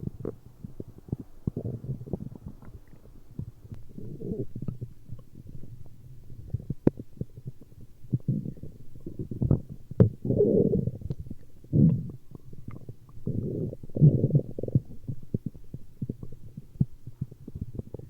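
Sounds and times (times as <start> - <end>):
stomach growling: 0.0 - 18.0
stomach pops and clicks: 9.3 - 10.3.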